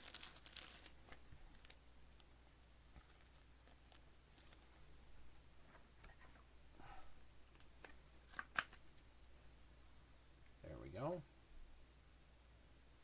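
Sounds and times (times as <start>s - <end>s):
cards and plastic sleeves rustling: 0.0s - 4.9s, 7.5s - 9.1s.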